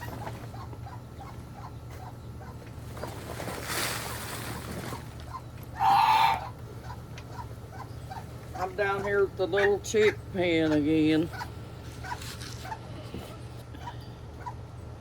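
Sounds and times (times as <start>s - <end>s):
low steady hum: 0.0s - 15.0s
poultry harsh squawk: 5.3s - 10.2s.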